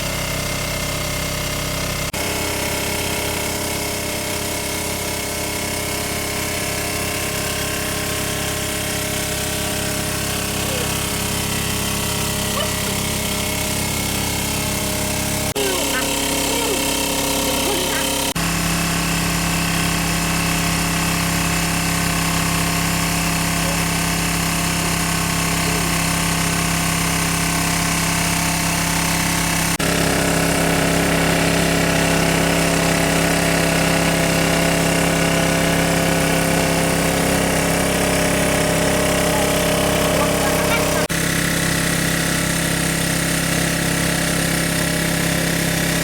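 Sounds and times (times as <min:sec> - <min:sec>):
water pump engine droning: 0:00.0 - 0:46.0.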